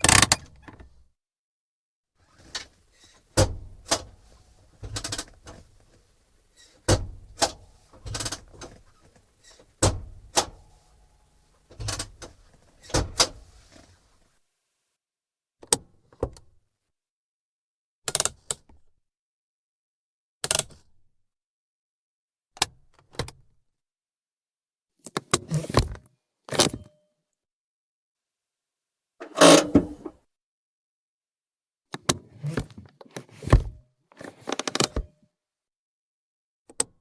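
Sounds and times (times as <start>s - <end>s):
hand brake lever ratcheting clicks: 29.2s - 30.1s.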